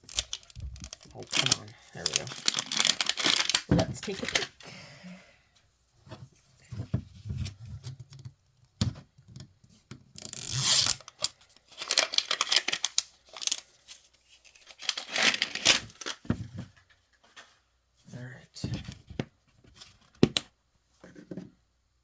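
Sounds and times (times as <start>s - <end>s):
packaging tearing and crinkling: 0.0s - 4.5s, 10.2s - 13.7s, 14.4s - 16.2s.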